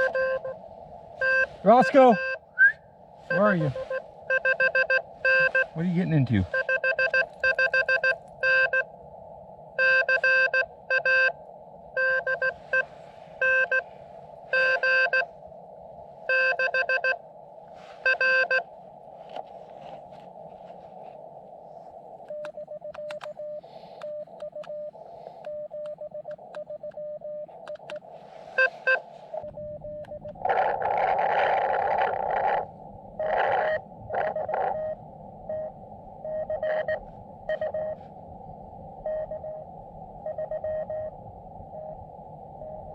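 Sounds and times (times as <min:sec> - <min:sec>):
faint morse tone: 0:00.0 - 0:00.6, 0:01.2 - 0:08.9, 0:12.0 - 0:15.3
morse code keying tone: 0:00.0 - 0:00.6, 0:01.2 - 0:02.5, 0:03.3 - 0:08.9, 0:09.8 - 0:11.4, 0:12.0 - 0:13.8, 0:14.5 - 0:15.2, 0:16.3 - 0:17.2, 0:18.0 - 0:18.6, 0:28.6 - 0:30.4, 0:33.2 - 0:38.0, 0:39.1 - 0:39.6, 0:40.3 - 0:41.1
receiver hiss: 0:00.0 - 0:42.9
burst of radio noise: 0:01.6 - 0:02.3, 0:30.4 - 0:35.0.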